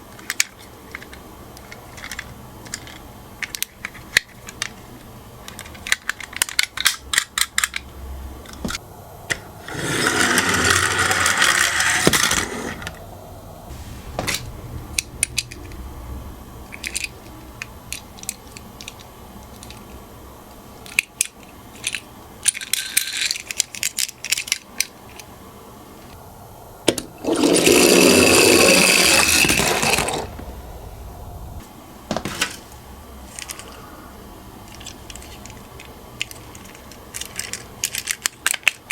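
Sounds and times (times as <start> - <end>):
toy cars clicking and tapping: 0.1 - 8.8, 16.7 - 20.0, 20.8 - 25.3, 34.7 - 38.9
toy car rolling down a slope: 9.6 - 13.0, 27.2 - 30.3.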